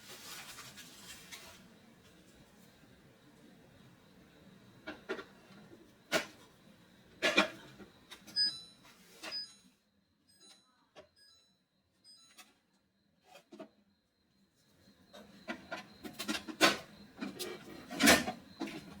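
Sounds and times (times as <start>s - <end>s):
short high beeps: 8.4s - 9.7s.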